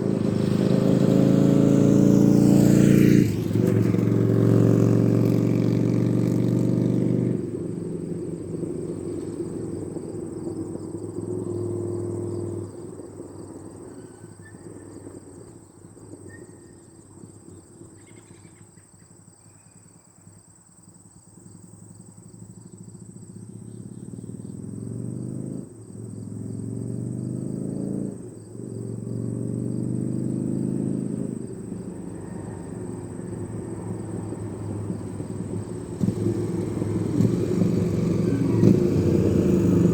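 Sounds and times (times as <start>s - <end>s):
motorcycle engine accelerating: 0.0s - 13.4s, 21.7s - 39.9s.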